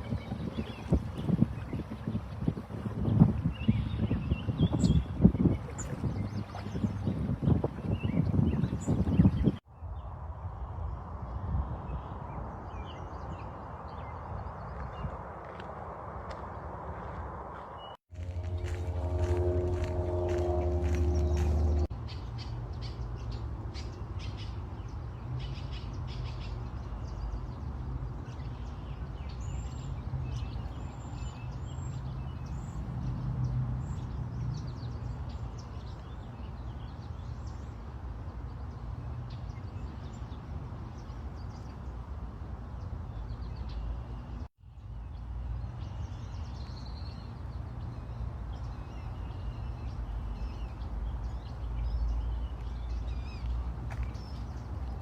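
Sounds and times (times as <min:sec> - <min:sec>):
steady low rumble: 0:14.5 - 0:23.2.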